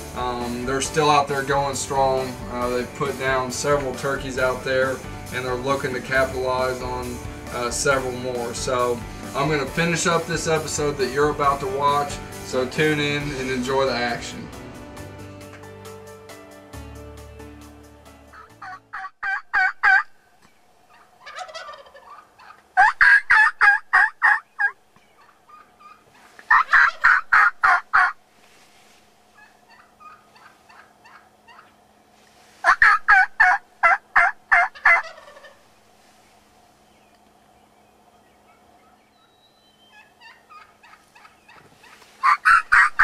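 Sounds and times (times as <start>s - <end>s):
wild turkey calling: 18.4s - 28.2s, 29.2s - 32.0s, 32.6s - 43.0s.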